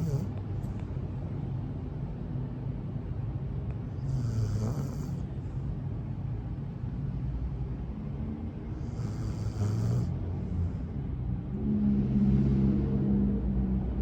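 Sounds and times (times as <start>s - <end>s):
dog snoring: 0.0s - 0.8s, 3.9s - 5.5s, 8.7s - 10.8s
steady low rumble: 0.0s - 9.2s, 10.0s - 14.0s.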